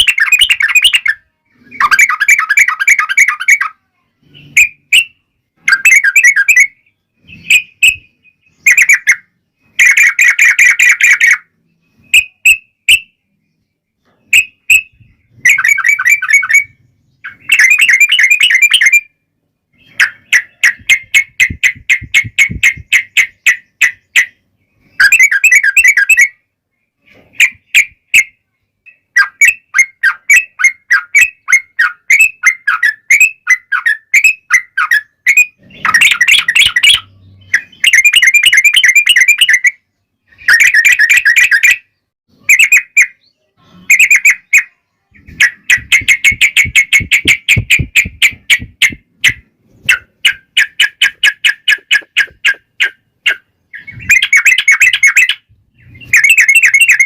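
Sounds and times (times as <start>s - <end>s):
bulbul chattering calls: 32.2s - 39.6s, 42.5s - 57.0s.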